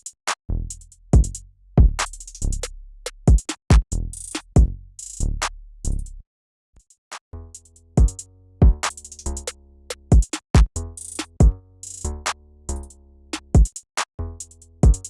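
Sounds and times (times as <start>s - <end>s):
hi-hat and snare hits: 0.0s - 6.1s, 7.6s - 15.0s
heavy kick drum: 1.2s - 2.0s, 3.3s - 3.8s, 8.0s - 8.8s, 10.1s - 10.7s
drum machine beat: 3.1s - 4.8s, 8.0s - 12.3s, 13.4s - 13.8s
synth bass and chords: 7.4s - 10.0s, 10.8s - 13.5s, 14.2s - 15.0s.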